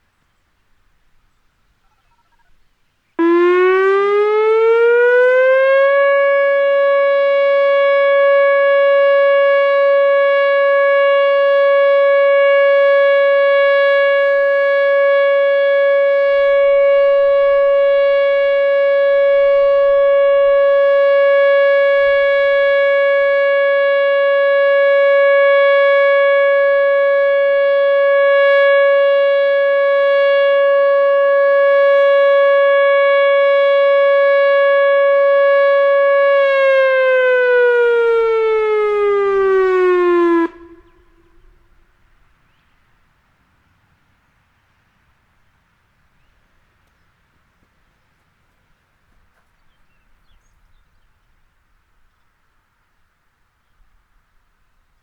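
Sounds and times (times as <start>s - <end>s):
warning siren rising to steady tone: 3.2s - 42.0s.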